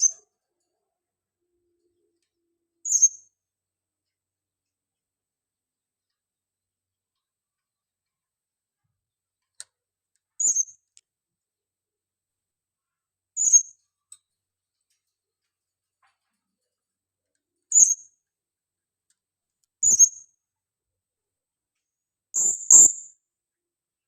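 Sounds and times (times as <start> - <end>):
parrot high-pitched squeaky calls: 22.4 - 23.1.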